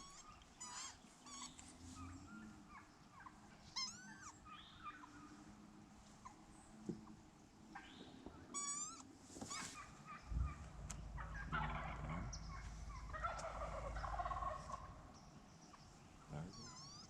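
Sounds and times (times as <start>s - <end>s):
ducks squealing calls: 0.0s - 5.2s, 8.6s - 15.2s.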